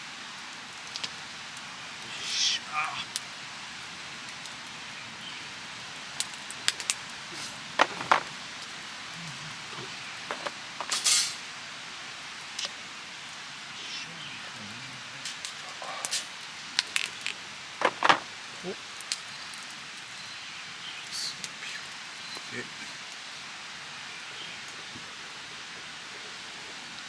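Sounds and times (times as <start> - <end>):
hissing rustle: 0.0 - 27.0
camp utensils clinking: 6.7 - 8.4, 9.7 - 11.5, 17.8 - 18.3.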